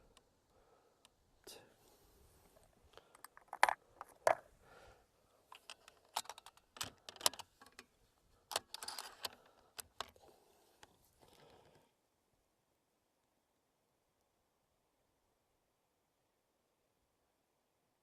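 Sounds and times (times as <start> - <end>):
rifle metallic clicks and rattling: 3.1 - 4.4, 5.5 - 10.2.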